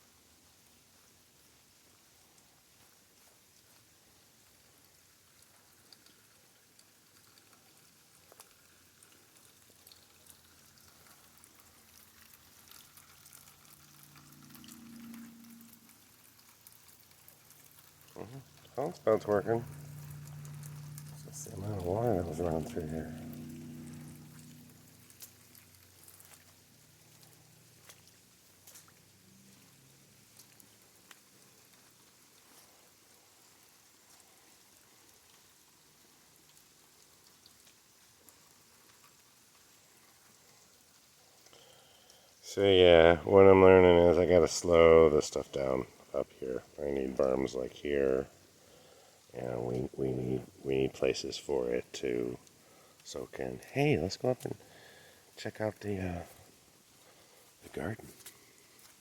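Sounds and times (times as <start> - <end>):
water crackling into ground: 2.4 - 59.0
low droning hum: 13.9 - 16.1, 17.6 - 26.0.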